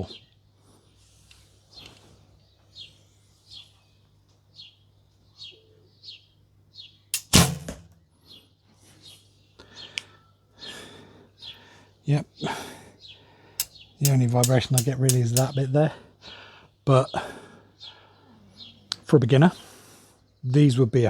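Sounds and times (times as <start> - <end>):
bird chirping: 13.0 - 15.6.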